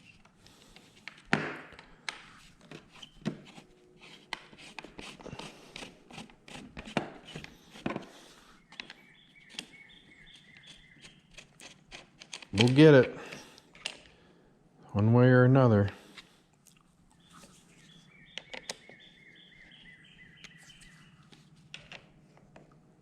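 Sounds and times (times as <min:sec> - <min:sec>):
hand tools clicking and knocking: 0:10.6 - 0:13.0.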